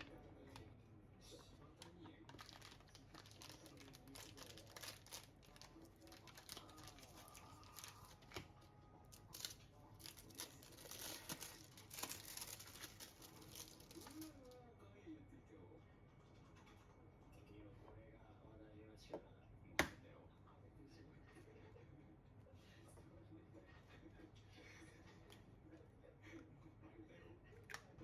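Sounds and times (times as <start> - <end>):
crinkling and rustling: 1.8 - 14.6.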